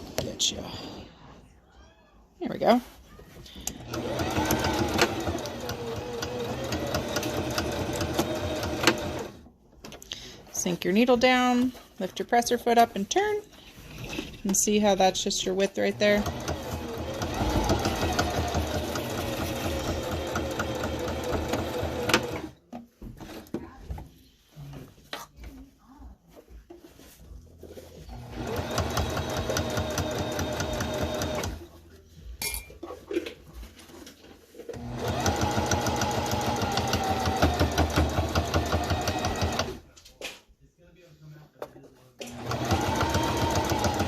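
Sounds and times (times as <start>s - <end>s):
sewing machine stitching: 3.7s - 9.5s, 13.8s - 22.6s, 28.1s - 31.7s, 34.7s - 39.8s, 42.2s - 44.0s.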